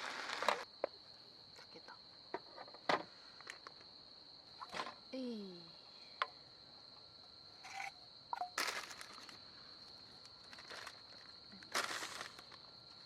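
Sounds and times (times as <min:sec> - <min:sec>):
insects chirring: 0:00.0 - 0:13.0
rustling and handling noise: 0:10.2 - 0:12.7.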